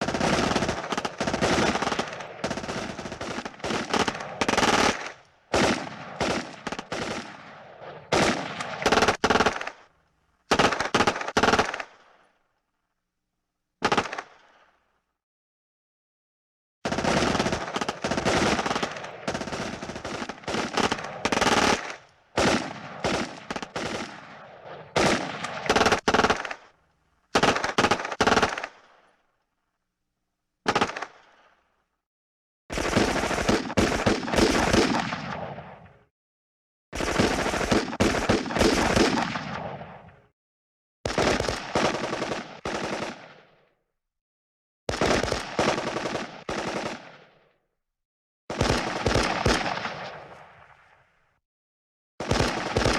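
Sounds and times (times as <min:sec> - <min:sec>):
machine-gun bursts: 0:00.0 - 0:07.3, 0:08.1 - 0:09.8, 0:16.9 - 0:24.1, 0:25.0 - 0:26.7, 0:32.7 - 0:35.2, 0:37.0 - 0:39.4, 0:41.1 - 0:43.2, 0:44.9 - 0:47.0, 0:48.5 - 0:49.9, 0:52.2 - 0:52.9.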